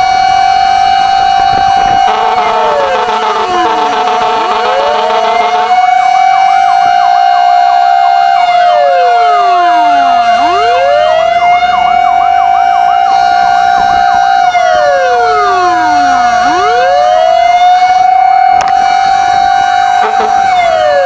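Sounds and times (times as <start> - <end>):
fire truck sirens: 0.0 - 21.0.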